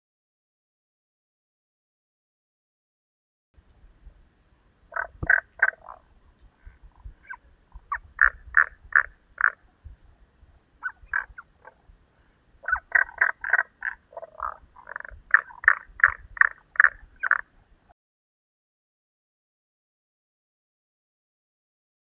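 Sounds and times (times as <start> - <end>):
frogs croaking: 4.9 - 9.8, 10.8 - 12.0, 12.6 - 17.6.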